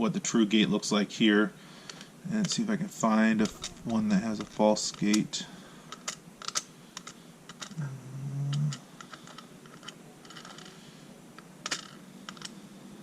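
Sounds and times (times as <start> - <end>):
man's voice humming: 7.8 - 8.8.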